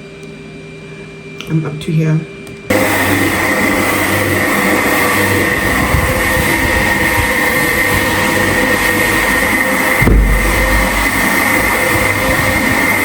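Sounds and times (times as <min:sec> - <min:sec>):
carpet cleaning machine whining: 0:02.7 - 0:13.0.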